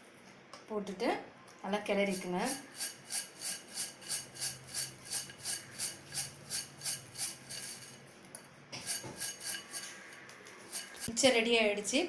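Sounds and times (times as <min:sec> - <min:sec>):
snack scraping in a vessel: 0:08.8 - 0:11.1.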